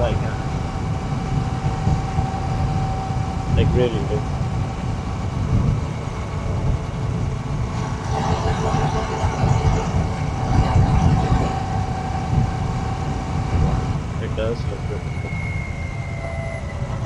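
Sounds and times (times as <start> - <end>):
wind rumble on microphone: 0.0 - 17.0.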